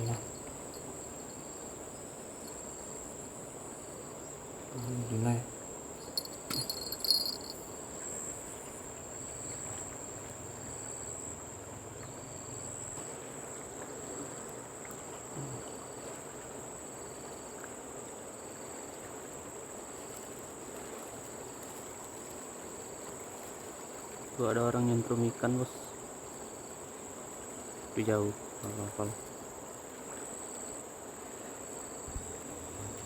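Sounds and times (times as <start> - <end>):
faint low hum: 0.0 - 10.9, 32.1 - 33.0
insects buzzing: 0.0 - 10.9
insect chirps: 0.0 - 11.2.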